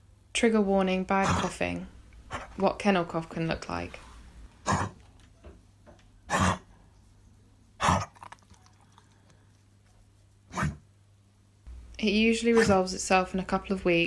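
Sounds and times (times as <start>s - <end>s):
dog coughing: 1.2s - 1.7s, 2.3s - 2.6s, 4.6s - 5.0s, 6.3s - 6.7s, 7.8s - 8.3s, 10.5s - 10.8s.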